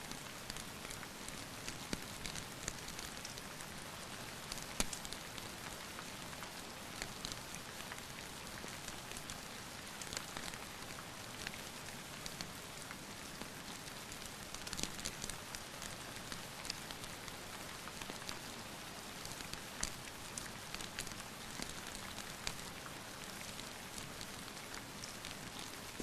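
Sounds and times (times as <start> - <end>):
wood fire crackling and popping: 0.4 - 3.7, 4.5 - 8.3, 19.2 - 26.0.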